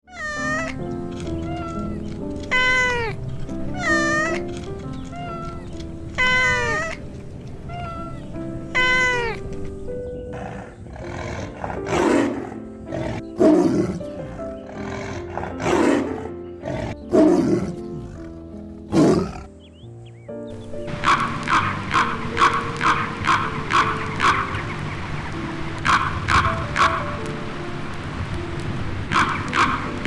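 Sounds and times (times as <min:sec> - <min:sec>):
animal cries: 0:00.0 - 0:10.0
rough breathy animal calls: 0:00.0 - 0:12.0
background music: 0:00.1 - 0:30.0.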